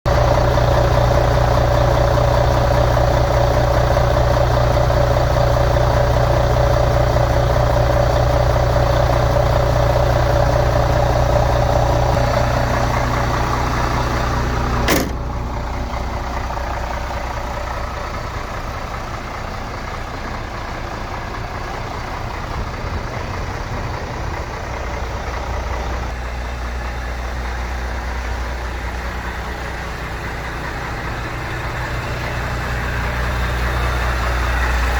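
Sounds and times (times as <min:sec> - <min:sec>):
diesel engine idling: 0:00.0 - 0:34.9
sharp click: 0:14.9 - 0:15.2.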